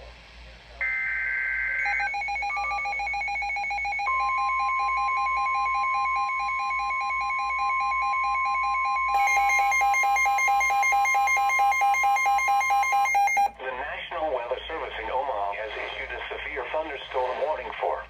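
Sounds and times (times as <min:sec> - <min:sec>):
steady single-pitch alarm tone: 0:00.8 - 0:13.5
rapidly pulsing electronic beep: 0:00.9 - 0:13.5.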